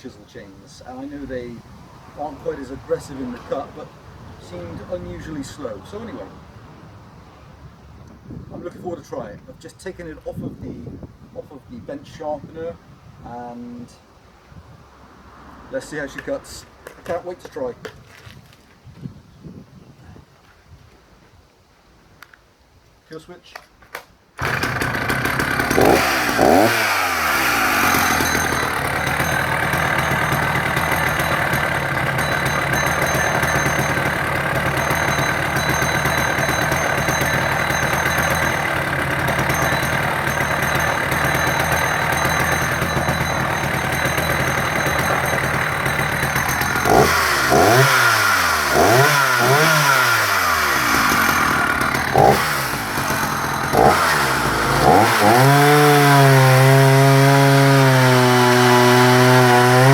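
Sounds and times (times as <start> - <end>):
chainsaw revving and idling: 24.4 - 59.9.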